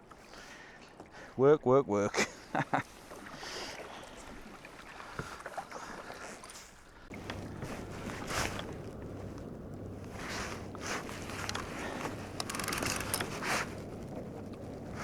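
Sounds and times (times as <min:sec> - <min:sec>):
water swish: 0:02.8 - 0:15.0
low steady hum: 0:07.1 - 0:15.0
water washing around kayak: 0:07.1 - 0:15.0.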